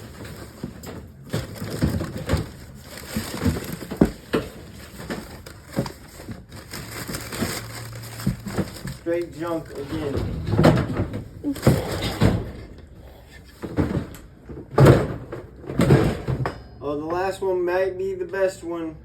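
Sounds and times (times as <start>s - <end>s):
rustling: 0.0s - 14.2s
items knocking and clattering: 0.0s - 16.8s.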